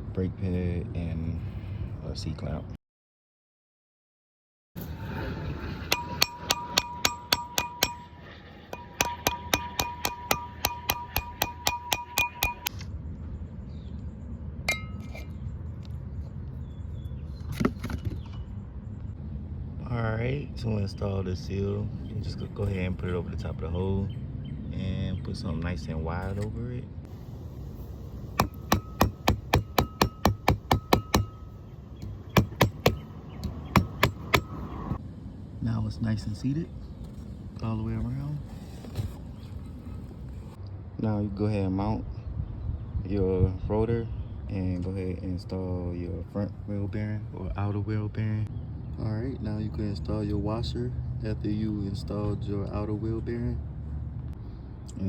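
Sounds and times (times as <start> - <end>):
hammer striking metal: 5.8 - 12.8, 28.4 - 34.7.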